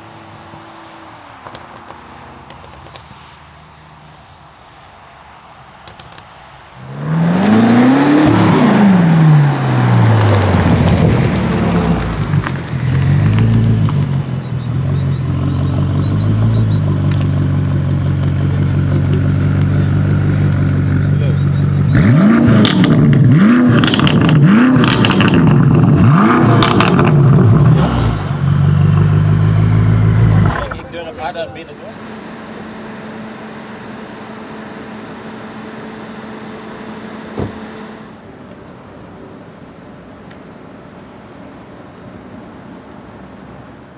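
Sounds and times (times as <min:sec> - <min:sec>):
car engine running: 0:06.8 - 0:38.4.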